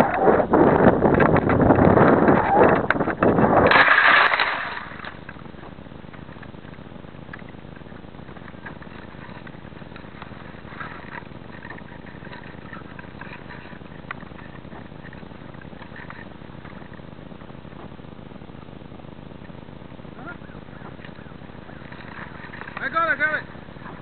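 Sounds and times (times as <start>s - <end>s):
faint ticks: 5.0s - 17.9s.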